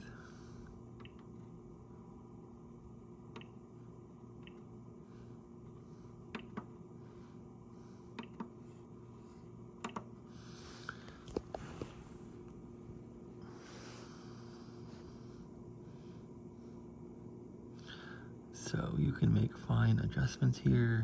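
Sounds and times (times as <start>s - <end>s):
low electrical hum: 0.0s - 21.0s
oscilloscope control clicks: 3.3s - 3.6s.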